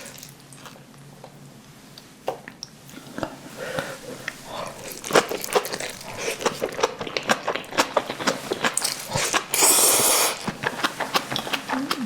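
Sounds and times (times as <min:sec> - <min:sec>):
wet chewing clicks: 0:02.3 - 0:12.0
mouth slurp: 0:02.9 - 0:12.0.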